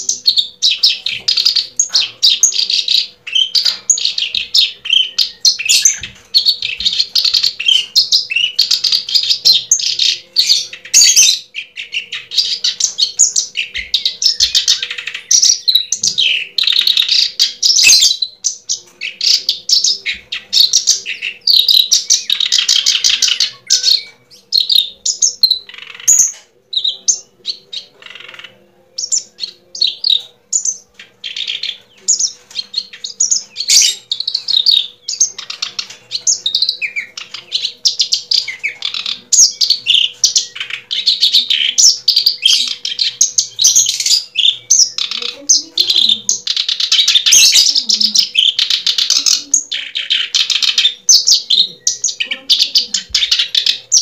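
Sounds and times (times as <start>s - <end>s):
birds chirping: 0.0s - 54.0s.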